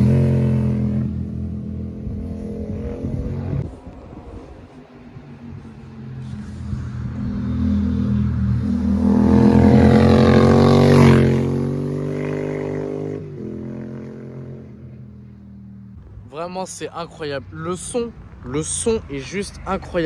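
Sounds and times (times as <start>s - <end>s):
motorcycle riding past: 0.0s - 16.0s.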